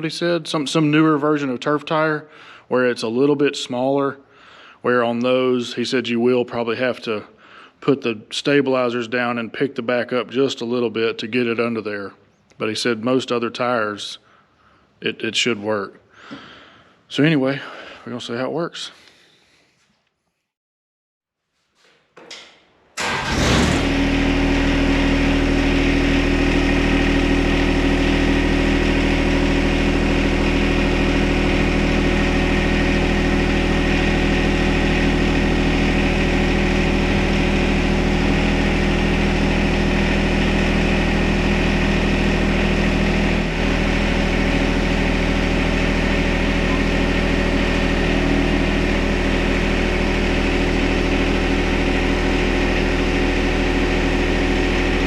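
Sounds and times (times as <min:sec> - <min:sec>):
diesel tractor engine running: 0:23.0 - 0:55.0.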